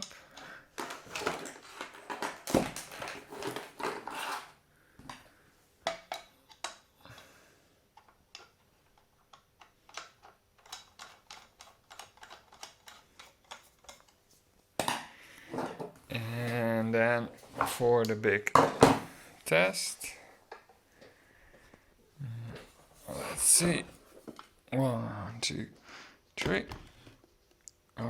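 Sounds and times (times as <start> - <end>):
plastic and metal parts clicking: 5.8 - 7.2, 8.0 - 14.2.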